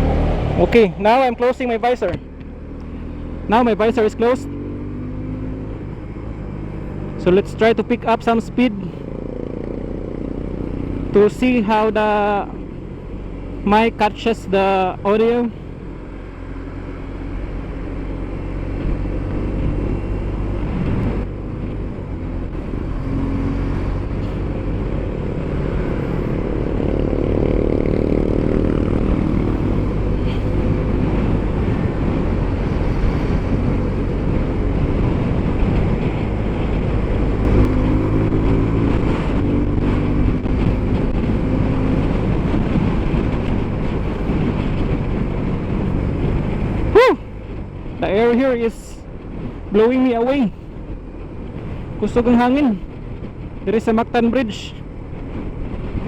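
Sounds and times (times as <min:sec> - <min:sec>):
motorcycle engine: 0:00.0 - 0:56.0
wind rushing past helmet: 0:15.7 - 0:53.8, 0:54.8 - 0:56.0.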